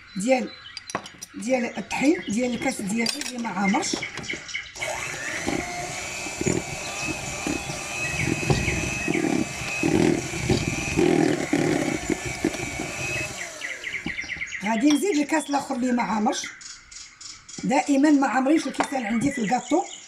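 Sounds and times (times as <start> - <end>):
electric hand mixer running: 4.8 - 14.6.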